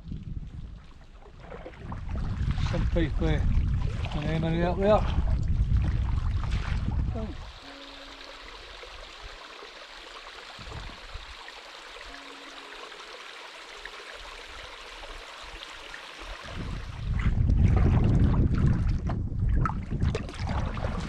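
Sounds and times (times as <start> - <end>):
wind rumble on microphone: 0.0 - 7.7, 10.6 - 11.4, 16.3 - 21.0
trickling rushing water: 0.0 - 17.6.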